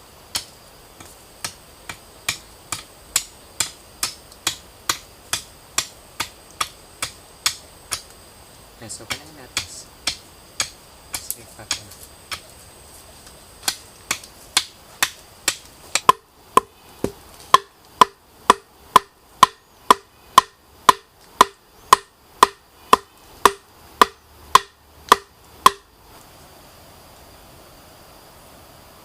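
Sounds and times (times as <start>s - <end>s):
tool striking wood: 0.3s - 8.1s, 9.1s - 12.4s, 13.6s - 25.9s.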